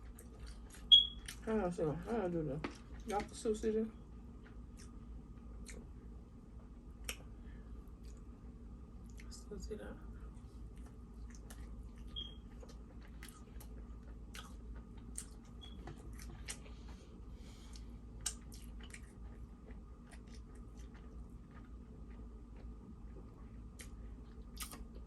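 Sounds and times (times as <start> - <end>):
person chewing food: 0.0 - 1.4, 4.4 - 6.0, 10.3 - 25.0
wet mouth clicks and smacks: 24.6 - 24.9.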